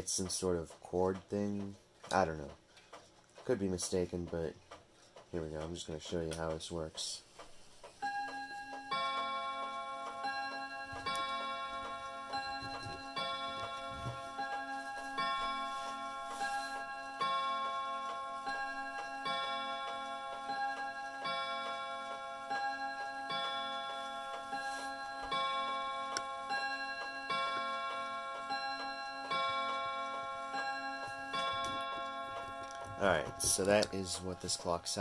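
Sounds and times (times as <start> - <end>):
clock chime rods striking: 7.9 - 35.0.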